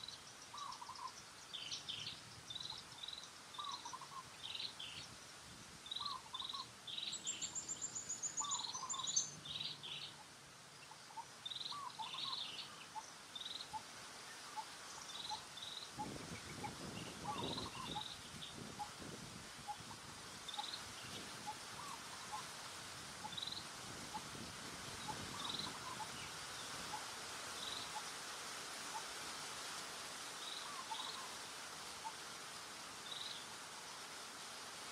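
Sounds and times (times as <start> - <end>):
steady background hiss: 0.0 - 34.9
birds chirping: 5.9 - 10.2.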